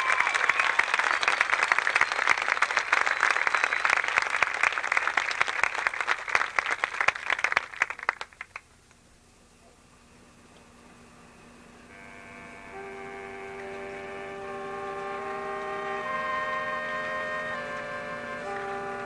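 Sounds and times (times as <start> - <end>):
audience applauding: 0.0 - 8.7, 13.5 - 19.0.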